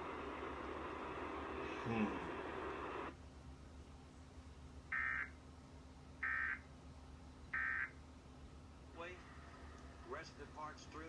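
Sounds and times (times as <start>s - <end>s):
steady hiss: 0.0s - 3.2s.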